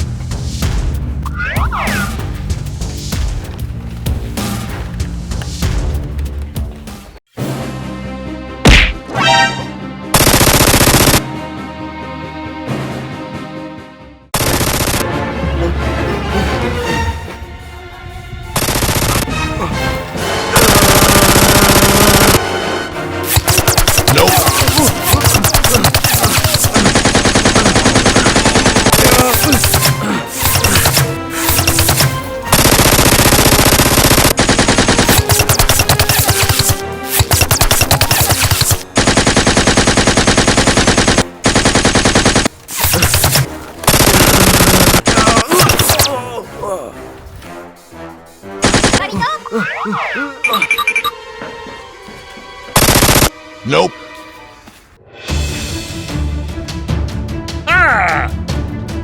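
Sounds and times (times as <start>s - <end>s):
background music: 0.0s - 59.0s
machine gun fire: 10.1s - 11.2s, 14.4s - 15.0s, 18.6s - 19.3s, 20.6s - 22.4s, 23.3s - 46.0s, 48.6s - 49.1s, 52.8s - 53.3s
automatic gunfire bursts: 10.2s - 11.2s, 14.4s - 15.0s, 18.6s - 19.3s, 20.6s - 22.4s, 23.4s - 46.0s, 48.6s - 49.1s, 52.8s - 53.3s.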